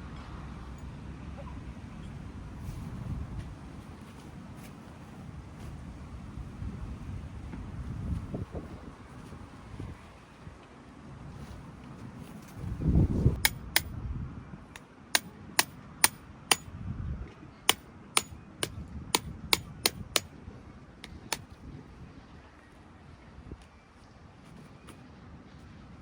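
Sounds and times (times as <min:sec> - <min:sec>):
hammer striking metal tent pegs: 0:13.4 - 0:14.0, 0:14.8 - 0:16.7, 0:17.7 - 0:20.3.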